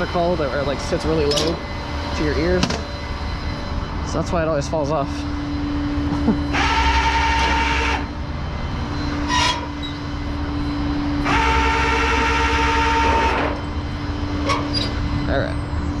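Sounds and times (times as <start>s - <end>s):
truck engine hum: 0.0s - 16.0s
hydraulic winch whining: 6.2s - 8.2s, 8.8s - 15.8s.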